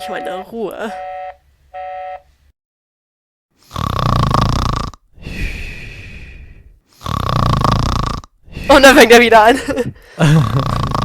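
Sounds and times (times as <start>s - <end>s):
man snoring loudly: 3.6s - 5.7s, 6.9s - 8.4s, 10.2s - 11.0s.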